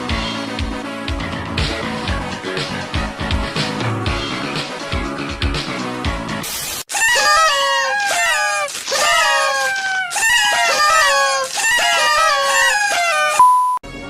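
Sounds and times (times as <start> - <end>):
roosters crowing: 6.9 - 13.4.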